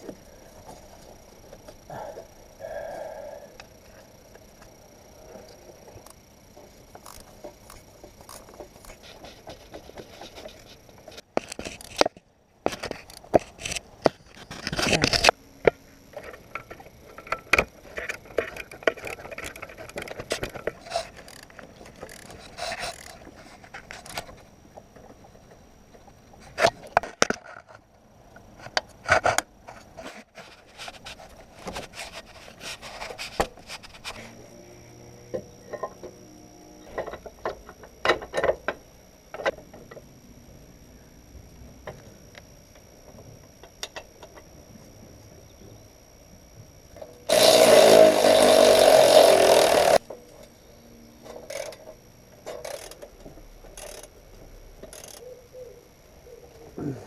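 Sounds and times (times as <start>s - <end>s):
hand tools on metal parts: 47.0s - 50.5s, 51.2s - 54.2s, 54.8s - 55.2s.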